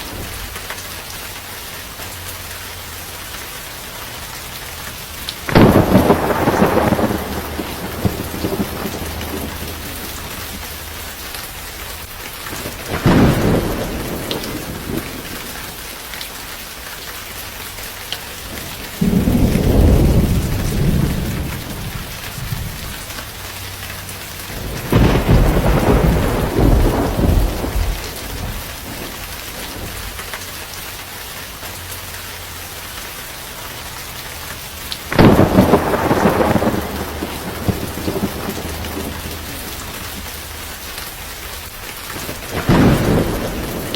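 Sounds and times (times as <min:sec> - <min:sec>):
steady rain falling: 0:00.0 - 0:43.9
thunder rumbling: 0:05.0 - 0:16.0, 0:18.4 - 0:30.5, 0:35.0 - 0:43.9.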